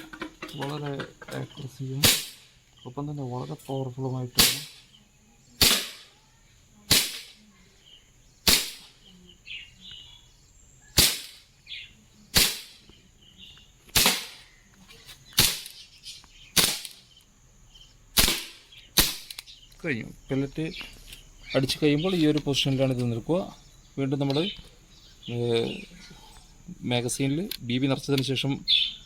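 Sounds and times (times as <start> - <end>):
air pistol shots: 2.0 - 2.6, 4.4 - 4.9, 5.6 - 6.1, 6.9 - 7.4, 8.4 - 9.0, 11.0 - 11.5, 12.3 - 12.9, 13.9 - 14.5, 15.4 - 15.8, 16.5 - 17.0, 18.2 - 19.4.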